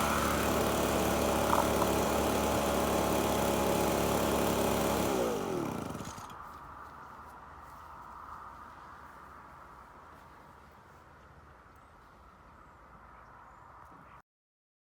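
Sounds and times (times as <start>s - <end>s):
leaf blower engine idling: 0.0s - 6.4s.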